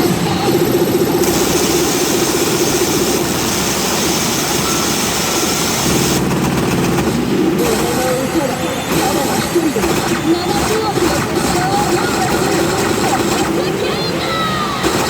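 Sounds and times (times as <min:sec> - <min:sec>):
pachinko jackpot sound effects: 0:00.0 - 0:14.2, 0:14.8 - 0:15.0
loud steady din: 0:00.0 - 0:15.0
bright hiss: 0:01.2 - 0:06.2.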